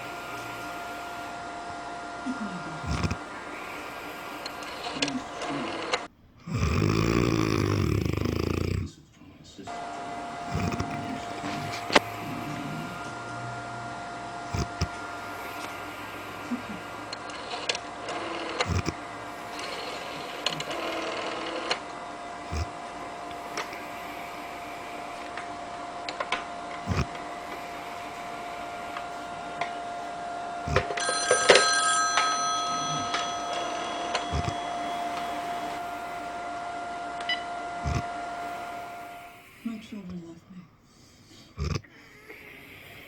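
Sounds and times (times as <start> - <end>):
steady hum: 0.0 - 6.1, 8.8 - 40.0
bell-like snoring: 2.2 - 9.0, 9.7 - 26.2, 26.8 - 29.8, 30.6 - 40.2, 41.5 - 43.0.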